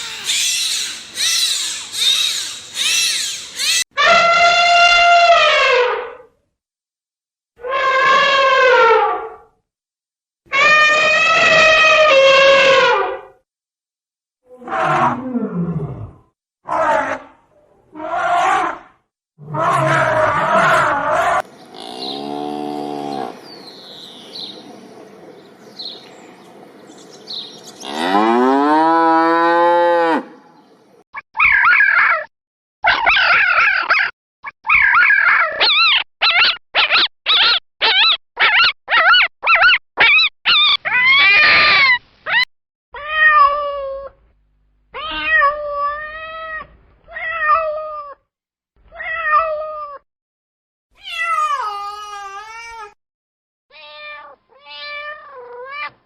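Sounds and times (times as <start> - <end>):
wavering animal calls: 0.0 - 5.7, 19.5 - 28.7
long rising animal call: 21.4 - 30.2.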